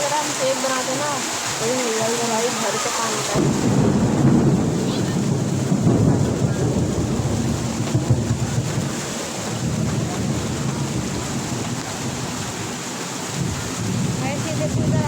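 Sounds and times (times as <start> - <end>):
heavy rain pouring: 0.0 - 15.0.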